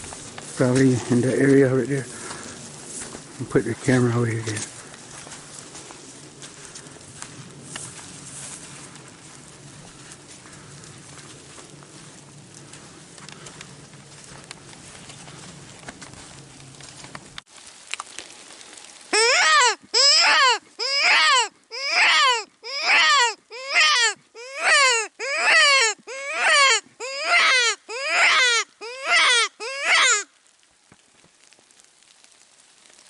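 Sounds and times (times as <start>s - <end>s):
predator call wailing cries: 19.2s - 30.3s.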